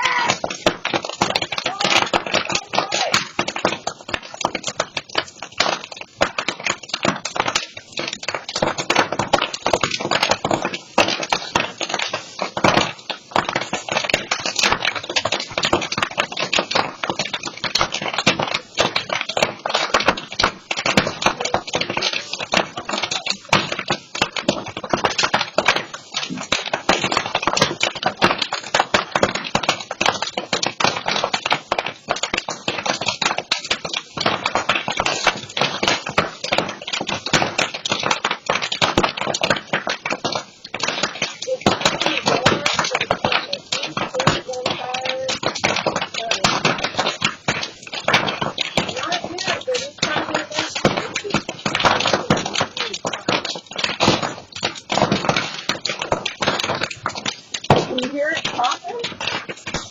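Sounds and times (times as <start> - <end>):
brush fire crackling and popping: 0.0 - 59.9.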